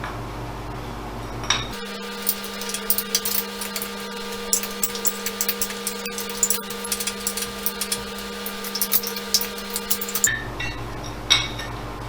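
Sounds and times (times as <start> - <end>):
machine hum: 1.7 - 10.3
metallic clicking of bolts: 1.7 - 10.3
metal clinks: 1.7 - 10.4.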